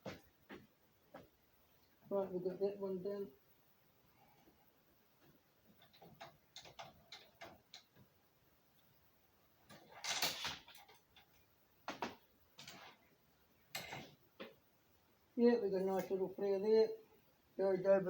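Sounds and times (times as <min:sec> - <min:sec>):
small metallic clicks: 0:05.8 - 0:08.1
metal scrape or rattle: 0:09.7 - 0:11.0.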